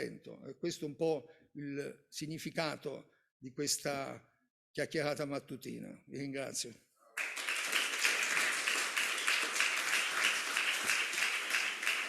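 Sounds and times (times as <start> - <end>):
audience applause: 7.2 - 12.0.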